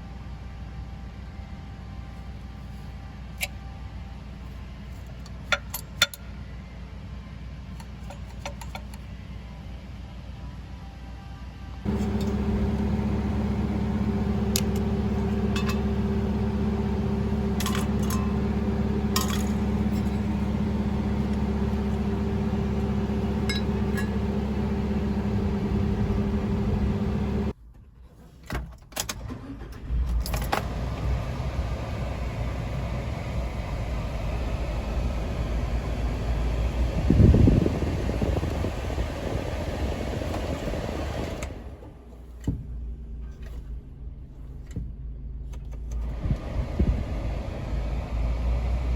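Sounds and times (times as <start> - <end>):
van engine running: 11.8 - 27.6, 29.4 - 48.9.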